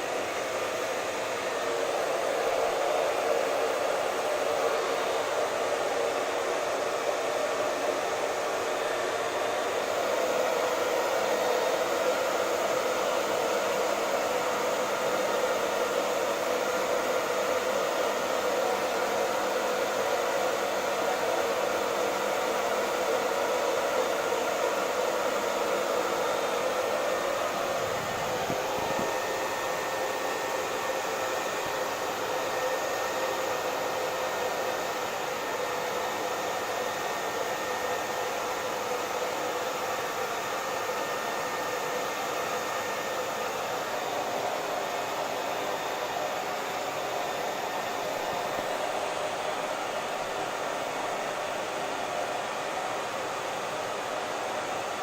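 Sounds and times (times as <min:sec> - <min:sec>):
hair dryer blowing air: 0:00.0 - 0:55.0.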